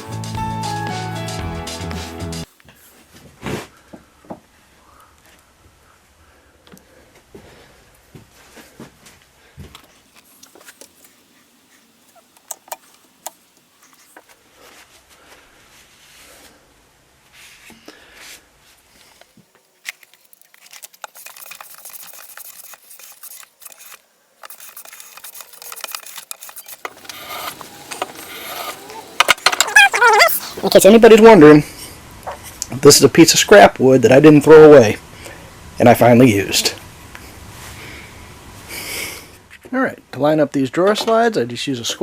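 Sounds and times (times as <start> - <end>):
wood and tools clicking: 19.8 - 30.7
rubbing and scraping: 19.9 - 30.9.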